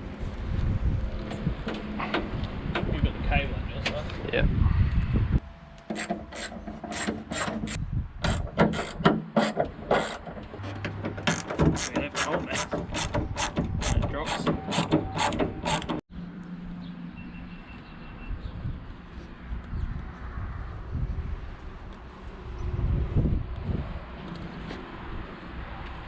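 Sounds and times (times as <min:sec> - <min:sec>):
hand ratchet clicking: 0:11.2 - 0:16.0.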